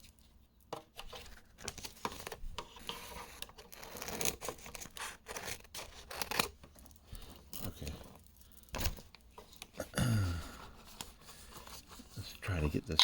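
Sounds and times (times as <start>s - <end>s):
paper crinkling and tearing: 1.2s - 9.9s.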